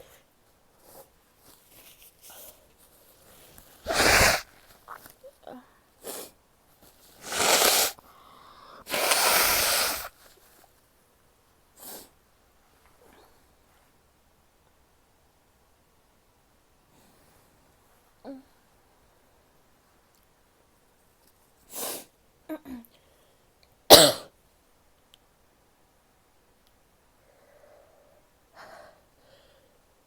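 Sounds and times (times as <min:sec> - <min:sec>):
blast of breath: 0:03.8 - 0:04.5, 0:07.2 - 0:10.2
person sneezing: 0:03.8 - 0:04.6, 0:07.2 - 0:08.0, 0:08.8 - 0:10.2, 0:23.9 - 0:24.3
person sniffing: 0:03.8 - 0:05.0, 0:06.0 - 0:06.4, 0:07.1 - 0:10.4, 0:11.8 - 0:12.2, 0:21.7 - 0:22.1.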